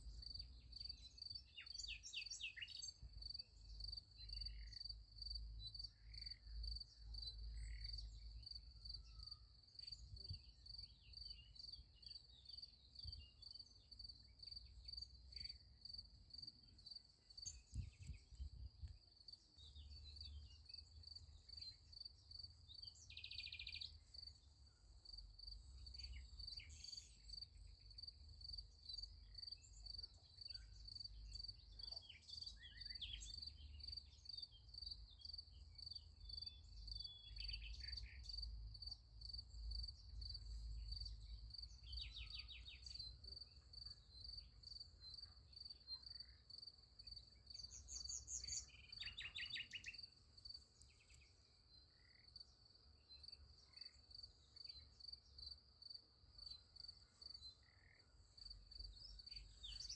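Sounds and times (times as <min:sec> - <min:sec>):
crickets chirping: 0:10.6 - 0:59.9
short bird chirps: 0:47.6 - 0:50.0.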